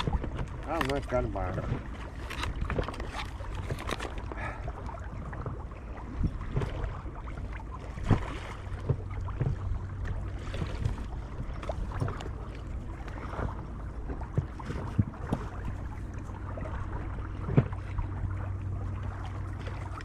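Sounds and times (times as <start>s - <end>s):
wind rumbling on microphone: 0.0s - 20.0s.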